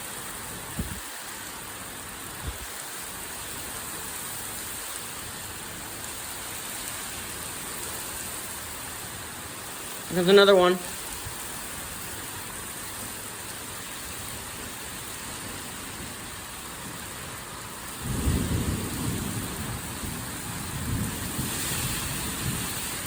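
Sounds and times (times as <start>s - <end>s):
heavy rain hissing: 0.0s - 23.0s
thunder rumbling: 17.9s - 23.0s.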